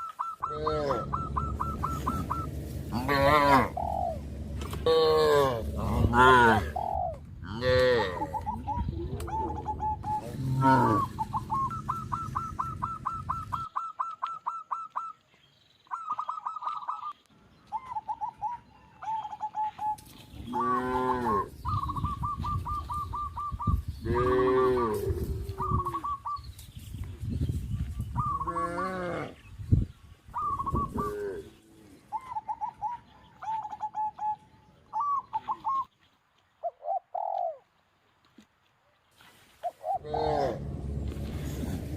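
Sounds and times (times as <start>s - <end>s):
birds calling repeated notes: 0.0s - 37.6s
cattle mooing: 2.9s - 3.8s, 4.4s - 6.8s, 7.5s - 8.5s, 10.2s - 11.3s, 40.0s - 41.9s.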